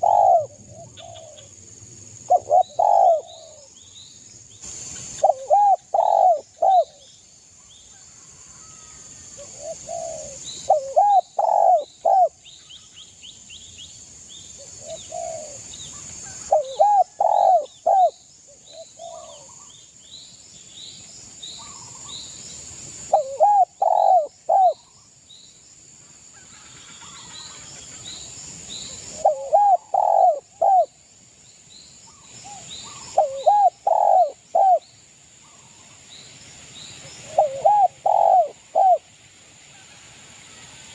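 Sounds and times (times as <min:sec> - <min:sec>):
dove cooing: 0:00.0 - 0:01.5, 0:02.3 - 0:03.7, 0:05.2 - 0:07.1, 0:09.4 - 0:12.4, 0:14.8 - 0:15.6, 0:16.3 - 0:18.2, 0:18.8 - 0:19.7, 0:23.1 - 0:24.9, 0:29.1 - 0:30.9, 0:32.9 - 0:34.8, 0:37.2 - 0:39.1
small birds chirping: 0:09.4 - 0:25.6, 0:27.0 - 0:39.1.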